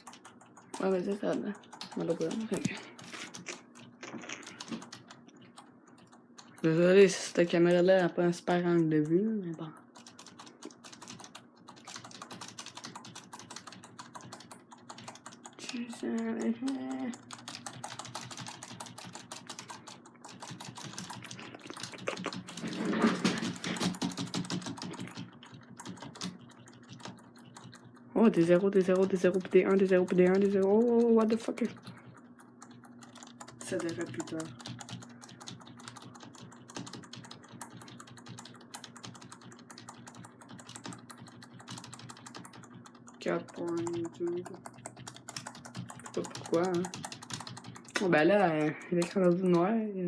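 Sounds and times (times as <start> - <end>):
keyboard keys clicking: 0.0 - 49.8
faint steady hum: 0.0 - 50.0.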